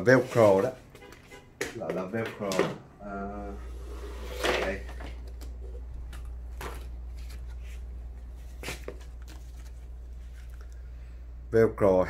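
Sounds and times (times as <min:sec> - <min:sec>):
packaging rustling: 0:05.0 - 0:10.8.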